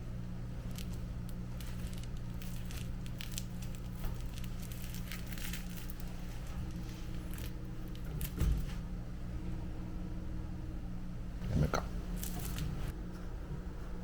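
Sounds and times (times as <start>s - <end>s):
steady low hum: 0.0s - 14.0s
rustling and crinkling: 0.6s - 8.8s, 11.9s - 12.9s.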